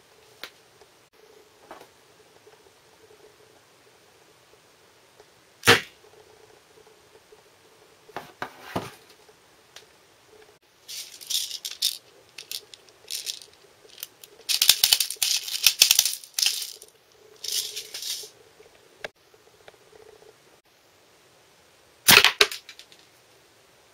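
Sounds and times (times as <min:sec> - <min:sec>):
rattling and clicking: 0:10.9 - 0:18.3.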